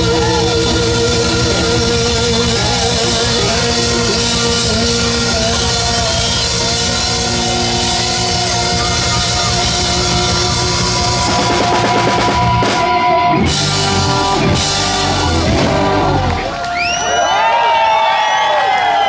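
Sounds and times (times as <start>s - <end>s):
live rock band playing: 0.0s - 16.7s
hard drum hits: 8.5s - 16.4s.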